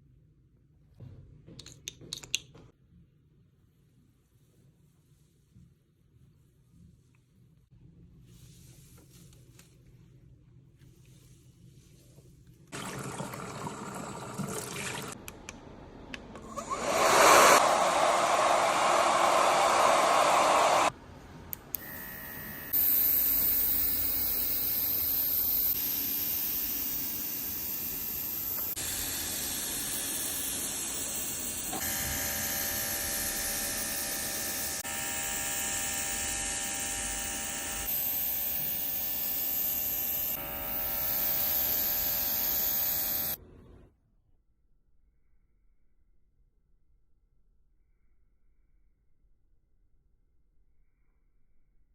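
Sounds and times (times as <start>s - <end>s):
hair dryer running: 16.4s - 20.9s, 28.4s - 36.4s, 40.5s - 43.4s.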